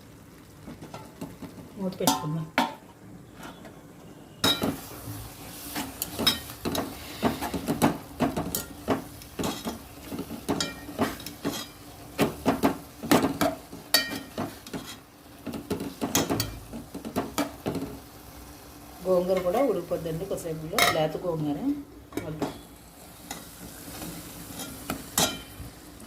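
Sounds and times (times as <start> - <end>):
metal utensil scraping a pan: 4.4 - 11.8, 13.4 - 15.0, 23.3 - 25.5.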